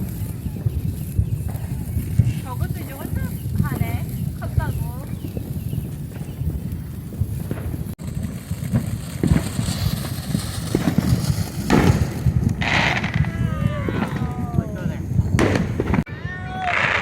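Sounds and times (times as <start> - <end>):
fireworks popping and crackling: 0.0 - 17.0
loud firework bang: 7.3 - 16.1.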